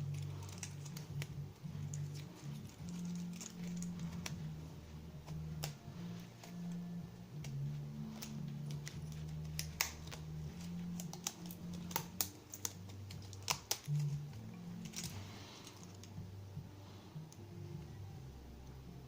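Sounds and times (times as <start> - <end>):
steady low hum: 0.0 - 19.0
metal lock parts clicking: 14.8 - 16.1.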